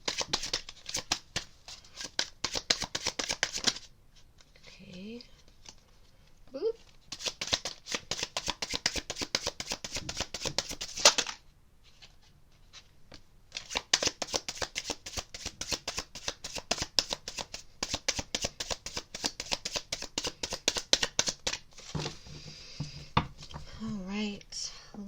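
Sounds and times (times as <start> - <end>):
cards being shuffled: 0.0 - 4.6, 6.8 - 22.2.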